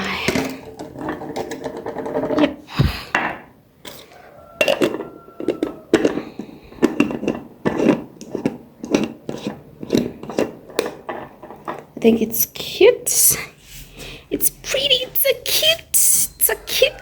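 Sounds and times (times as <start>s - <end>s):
jar and utensils knocking and clinking: 3.9s - 11.9s.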